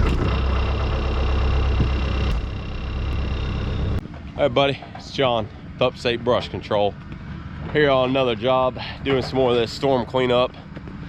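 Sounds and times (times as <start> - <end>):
thin high whine: 0.0 - 4.1
diesel engine rumbling: 0.0 - 11.0.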